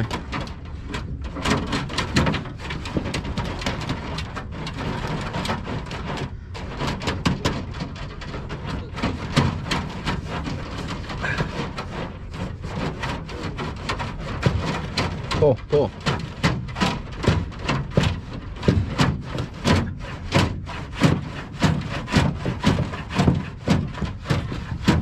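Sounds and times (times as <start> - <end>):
wires dragging on sheet metal: 0.0 - 25.0.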